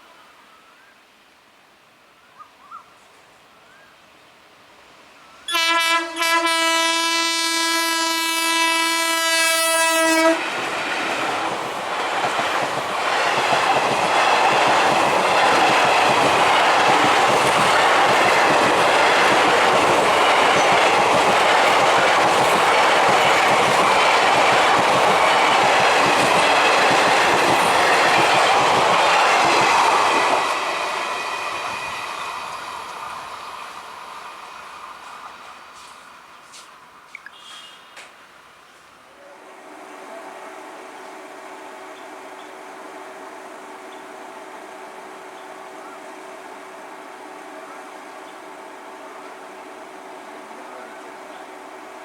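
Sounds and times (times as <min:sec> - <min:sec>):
train horn blast: 0:05.5 - 0:10.5
train wheels clattering over rails: 0:10.2 - 0:36.7.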